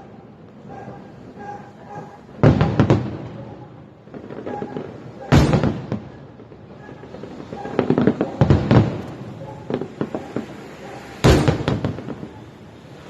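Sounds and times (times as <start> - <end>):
fireworks bangs: 0.0 - 13.0
fireworks cracks: 0.0 - 13.0
fireworks boom: 2.4 - 12.6.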